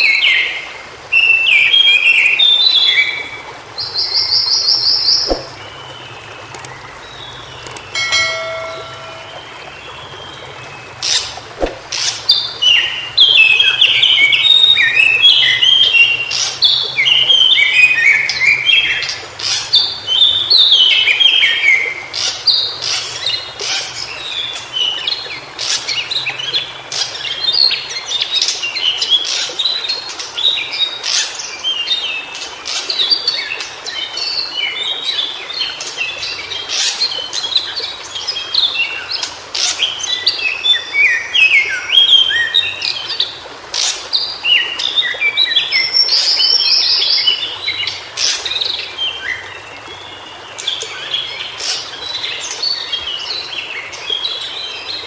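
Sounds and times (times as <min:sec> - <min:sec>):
sharp bird clicks: 0:05.2 - 0:05.6.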